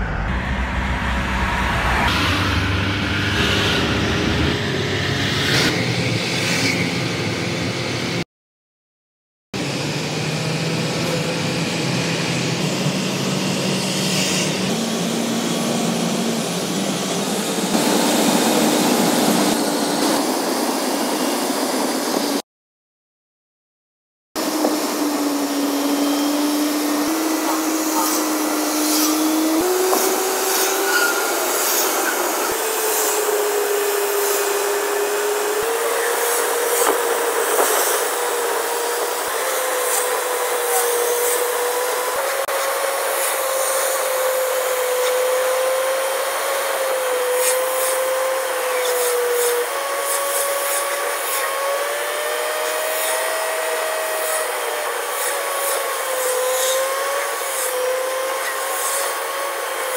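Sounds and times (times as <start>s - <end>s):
road and wind noise: 0.0s - 8.2s, 9.6s - 22.4s, 24.4s - 46.8s
whining drivetrain: 24.4s - 59.9s.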